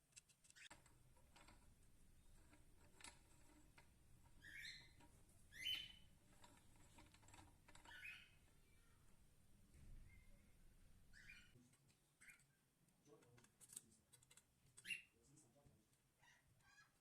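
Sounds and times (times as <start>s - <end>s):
faint bird chirps: 4.4s - 6.1s, 7.8s - 9.1s, 9.9s - 12.6s.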